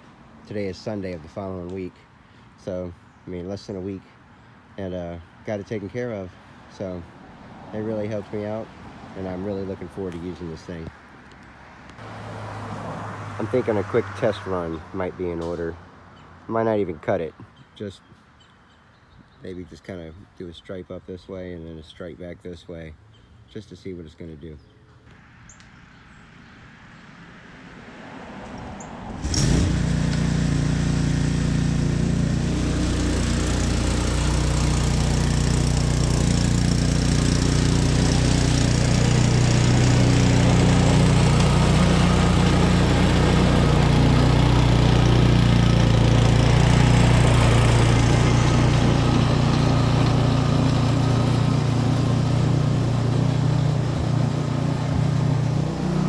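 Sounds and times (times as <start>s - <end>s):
lawn mower engine starting and running: 4.9s - 15.8s, 25.2s - 56.0s.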